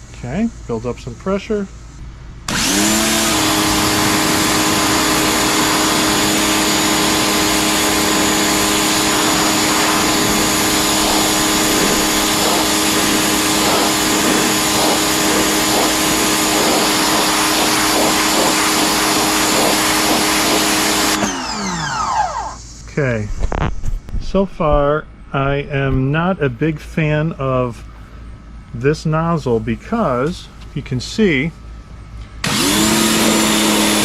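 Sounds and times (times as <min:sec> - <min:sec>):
pressure washer motor humming: 0:02.4 - 0:22.6, 0:32.4 - 0:34.0
water jet hissing: 0:02.8 - 0:21.8.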